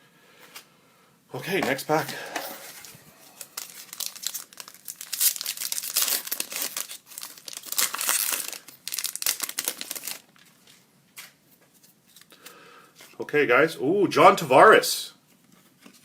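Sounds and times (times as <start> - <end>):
wrapper crinkling: 2.5 - 10.8.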